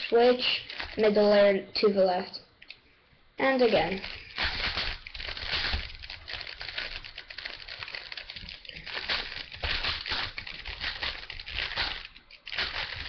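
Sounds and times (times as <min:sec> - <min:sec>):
speed cube clicking: 0:03.5 - 0:13.0.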